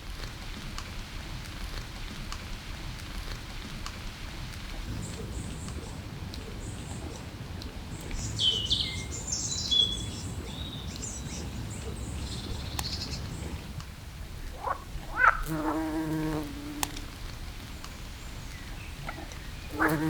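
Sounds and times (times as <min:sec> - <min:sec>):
steady low background noise: 0:00.0 - 0:20.0
high chirping calls: 0:04.9 - 0:20.0.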